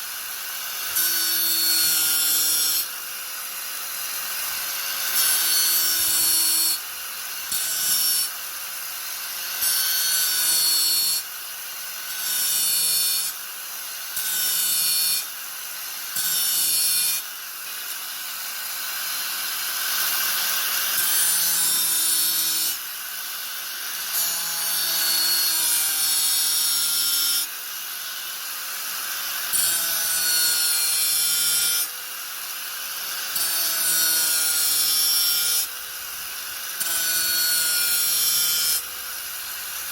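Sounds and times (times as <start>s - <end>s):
angle grinder whining: 0.0s - 11.3s.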